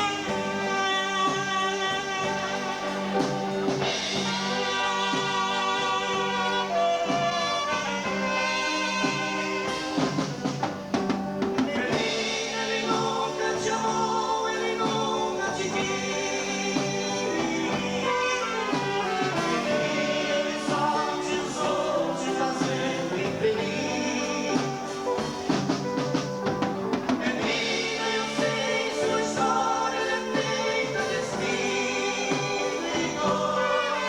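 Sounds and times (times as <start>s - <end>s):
dance band playing ballad: 0.0s - 34.0s
person singing: 11.5s - 26.2s, 27.0s - 34.0s.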